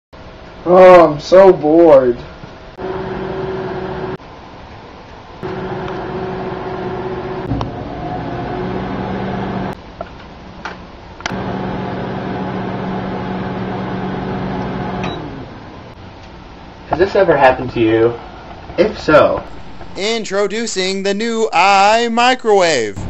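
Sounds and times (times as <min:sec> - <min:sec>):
microwave oven humming: 0:02.8 - 0:04.2, 0:05.4 - 0:09.8, 0:11.2 - 0:16.0, 0:19.5 - 0:20.0.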